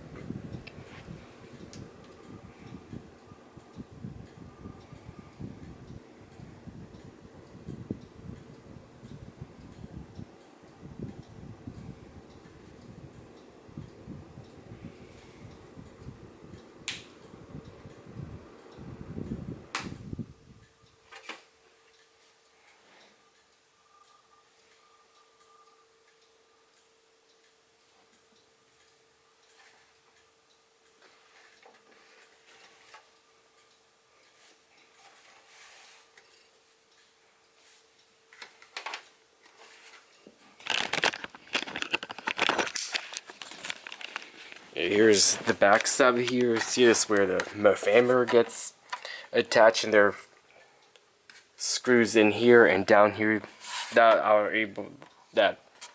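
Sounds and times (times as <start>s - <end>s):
fan heater air rumble: 0.0s - 55.9s
heater clattering and rustling: 38.4s - 48.6s.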